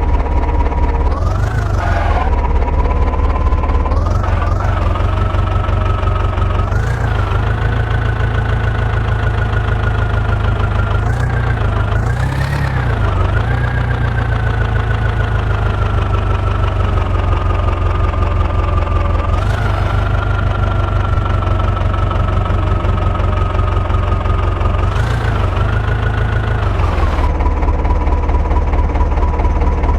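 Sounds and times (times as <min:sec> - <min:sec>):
heavy diesel engine running: 0:00.0 - 0:29.9.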